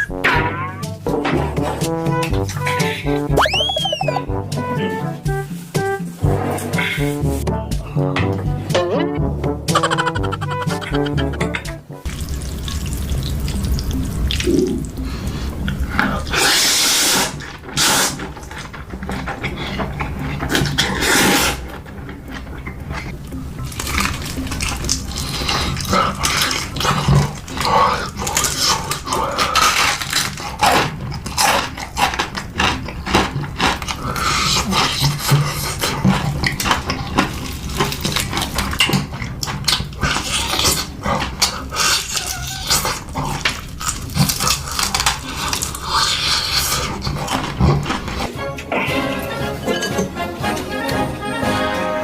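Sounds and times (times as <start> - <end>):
wet chewing and smacking: 9.7 - 48.7.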